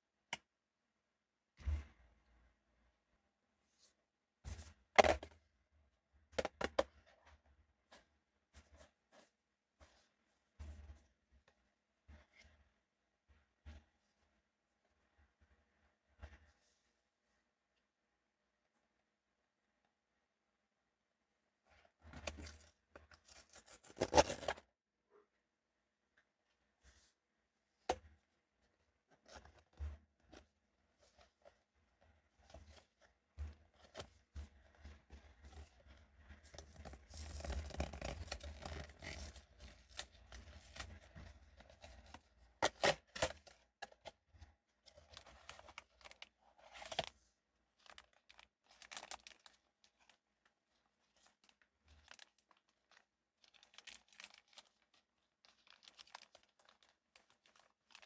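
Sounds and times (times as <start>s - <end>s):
packaging crinkling: 55.5s - 58.0s.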